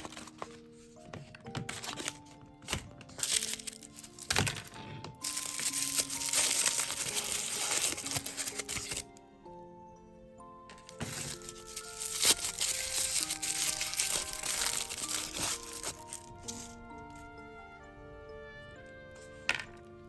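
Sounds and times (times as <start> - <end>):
plastic packaging crinkling: 0.0 - 9.1, 10.7 - 17.3
light background music: 0.0 - 20.0.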